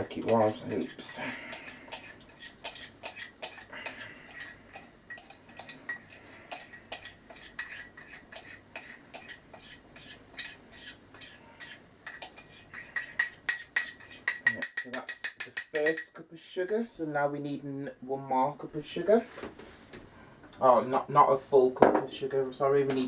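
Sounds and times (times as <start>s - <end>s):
teaspoon clinking against a cup: 0.3s - 16.2s.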